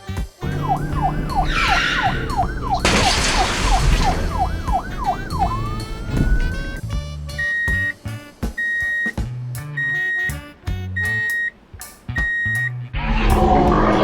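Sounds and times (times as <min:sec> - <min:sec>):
low car engine rumble: 0:00.2 - 0:14.0
police siren wailing: 0:00.4 - 0:07.9.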